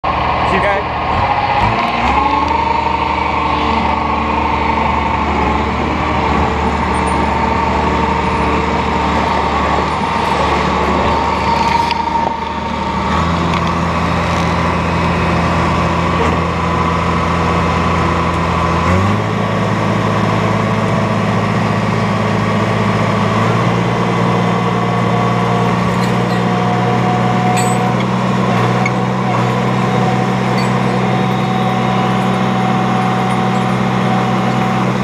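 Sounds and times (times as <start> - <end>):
diesel engine running: 0.0 - 35.0.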